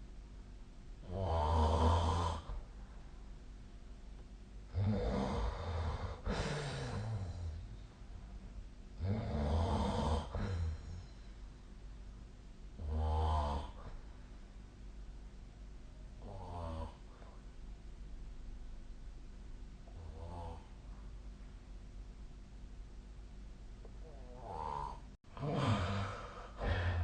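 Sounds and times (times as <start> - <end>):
person snoring: 1.0 - 2.6, 4.7 - 7.7, 9.0 - 11.0, 12.8 - 14.0, 16.2 - 17.4, 24.0 - 27.0
quiet breathing: 4.7 - 12.0, 12.7 - 14.8, 15.8 - 17.7, 23.8 - 27.0.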